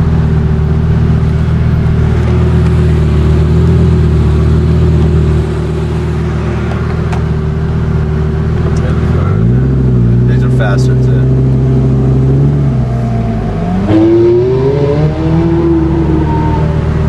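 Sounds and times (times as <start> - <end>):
sports car engine idling: 0.0 - 14.0.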